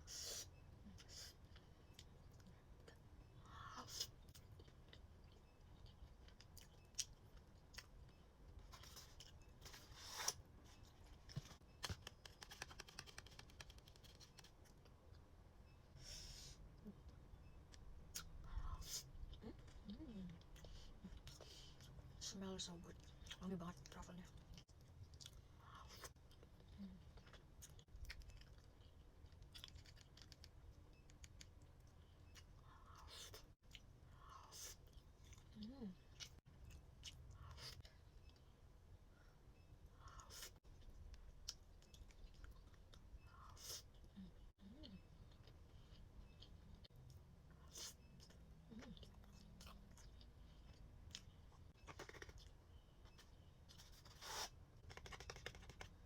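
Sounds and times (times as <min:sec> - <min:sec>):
eating clicks and crackles: 0:11.8 - 0:15.2, 0:26.0 - 0:33.5, 0:44.8 - 0:56.0.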